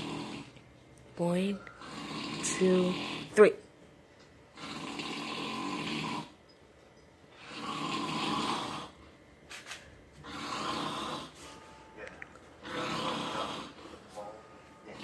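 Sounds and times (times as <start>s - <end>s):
man snoring: 0.0s - 0.6s, 1.8s - 3.5s, 4.5s - 6.4s, 7.3s - 9.0s, 10.2s - 11.4s, 12.6s - 14.0s.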